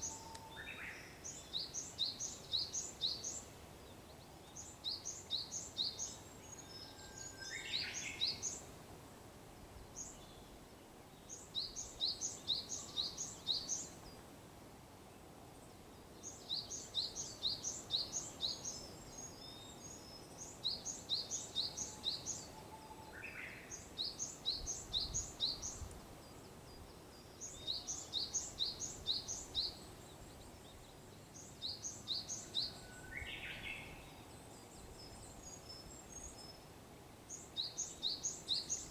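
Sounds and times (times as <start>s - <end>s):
bush warbler whistling song: 16.2s - 36.7s, 37.3s - 38.9s.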